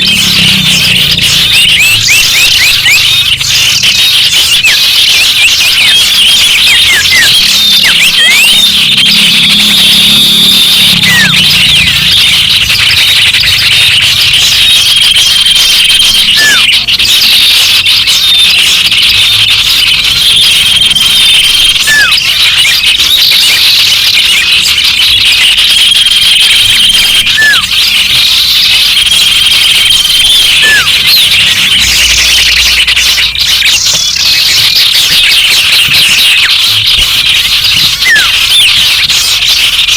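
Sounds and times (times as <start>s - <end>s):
birds chirping and twittering: 0.0s - 39.9s
held high whistle: 27.2s - 27.7s
downward-sliding whistle: 27.3s - 27.7s.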